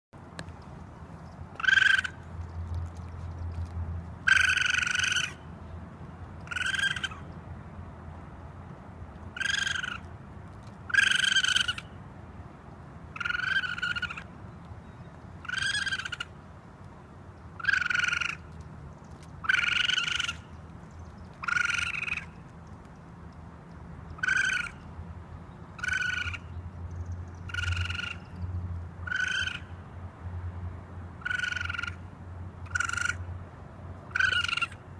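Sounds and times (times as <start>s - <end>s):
raccoon calling: 1.5s - 2.4s, 4.2s - 5.5s, 6.4s - 7.3s, 9.3s - 10.1s, 10.9s - 12.0s, 13.1s - 14.3s, 15.4s - 16.4s, 17.6s - 18.6s, 19.4s - 20.6s, 21.4s - 22.4s, 24.2s - 24.9s, 25.7s - 26.6s, 27.4s - 28.4s, 29.0s - 29.8s, 31.2s - 33.3s, 34.1s - 34.8s.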